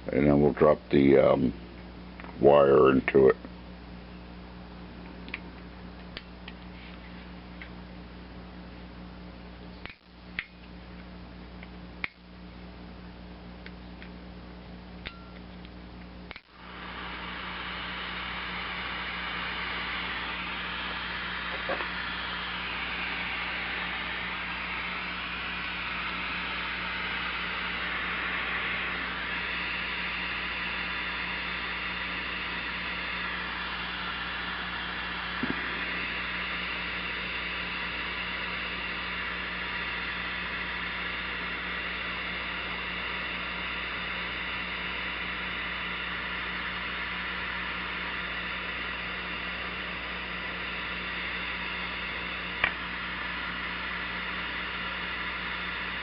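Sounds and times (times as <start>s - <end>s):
low steady hum: 0.0s - 56.0s
sharp click: 9.8s - 10.7s, 12.0s - 12.2s, 16.3s - 16.5s
torch flame hissing: 16.3s - 56.0s.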